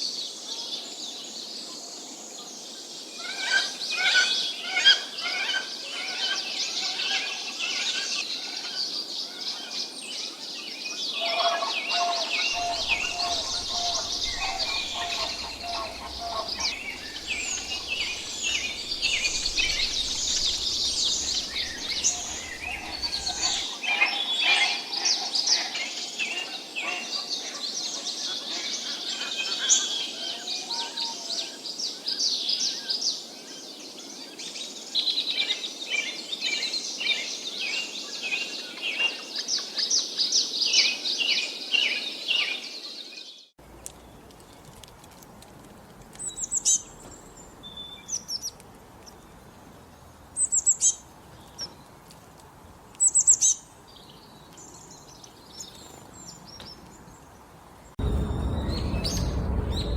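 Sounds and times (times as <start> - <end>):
songbirds chirping and trilling: 1.0 - 44.9, 46.1 - 59.9.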